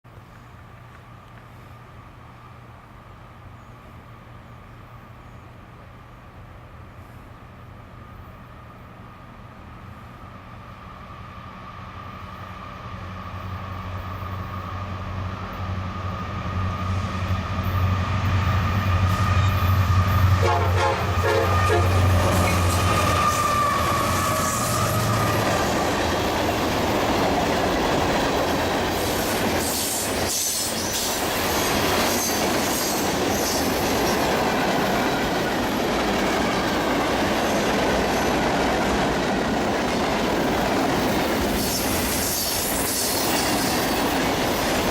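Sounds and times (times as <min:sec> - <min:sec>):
diesel locomotives: 0:00.1 - 0:44.9
train wheels clacking and squealing: 0:15.6 - 0:44.9
train horn: 0:19.1 - 0:25.8.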